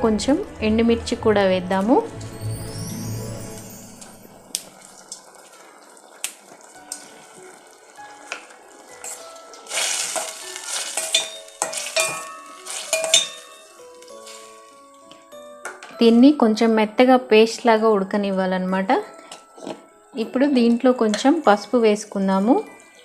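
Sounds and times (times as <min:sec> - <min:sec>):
food sizzling in oil: 0:02.4 - 0:16.6
spoon clinking on metal pot: 0:09.0 - 0:16.2.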